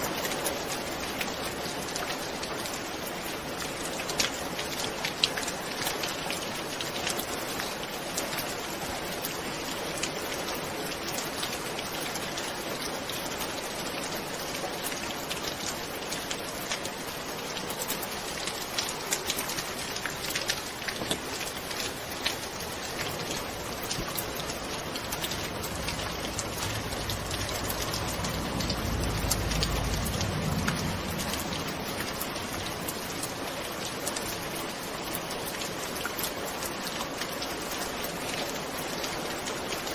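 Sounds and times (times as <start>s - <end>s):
steady rain: 0.0s - 39.9s
distant thunder rumble: 24.6s - 33.2s.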